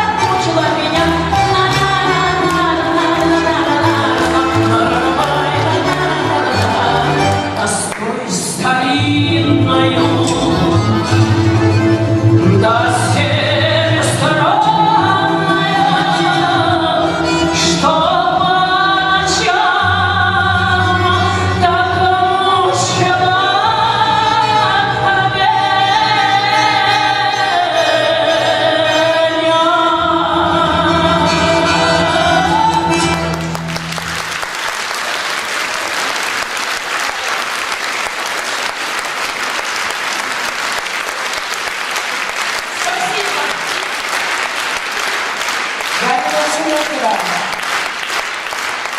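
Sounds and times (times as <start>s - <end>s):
balalaikas and accordion: 0.0s - 7.9s, 9.3s - 19.3s
woman singing: 0.0s - 11.1s, 12.4s - 33.6s
audience applause: 1.1s - 8.1s, 33.1s - 48.9s.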